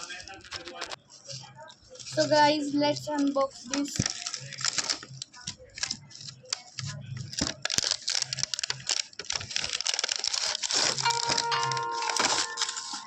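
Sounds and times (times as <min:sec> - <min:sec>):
packaging rustling and tearing: 0:03.0 - 0:13.0
steady pitched tone: 0:11.0 - 0:13.0.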